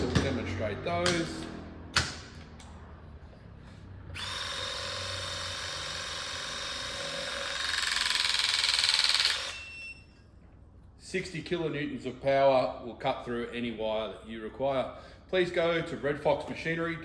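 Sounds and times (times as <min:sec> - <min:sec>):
hydraulic cutter motor whine: 0:04.0 - 0:10.1.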